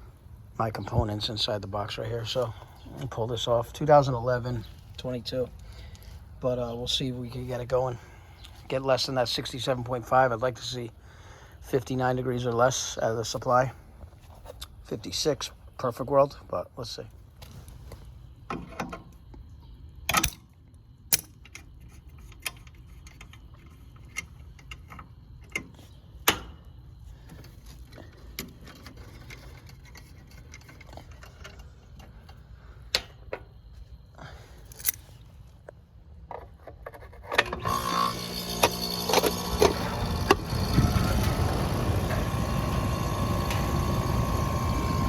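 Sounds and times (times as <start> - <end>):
condenser unit humming: 37.5 - 45.0.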